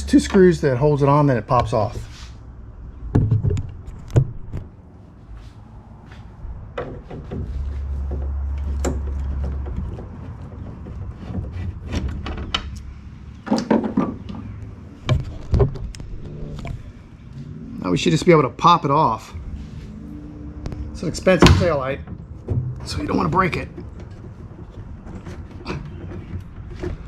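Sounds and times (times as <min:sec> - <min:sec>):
steady low hum: 0:14.4 - 0:27.0.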